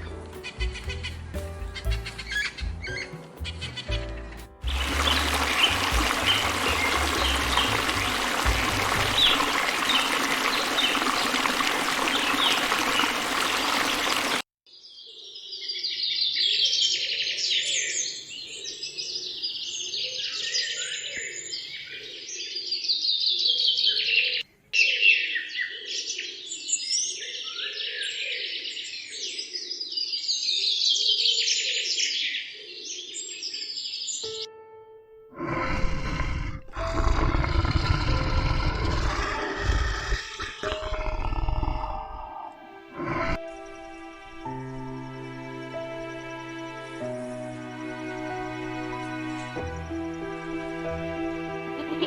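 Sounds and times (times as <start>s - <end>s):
flock of birds chirping: 1.7s - 14.4s.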